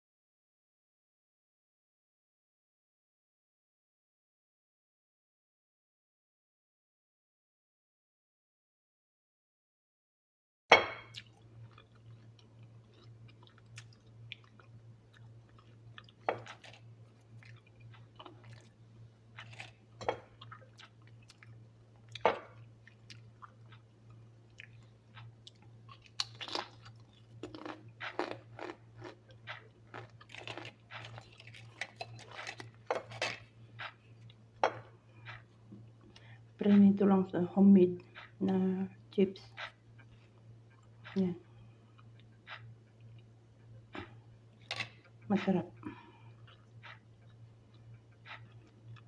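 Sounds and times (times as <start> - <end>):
faint low hum: 10.7 - 49.0
crunchy chips being chewed: 11.1 - 36.4.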